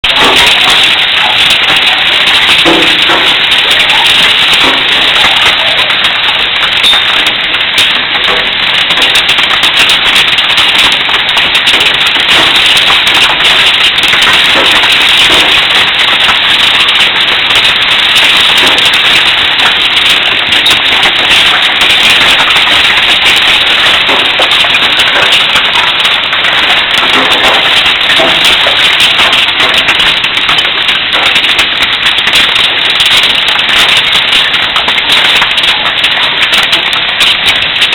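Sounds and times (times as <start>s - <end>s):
hailstones clattering on hard surfaces: 0.0s - 37.9s.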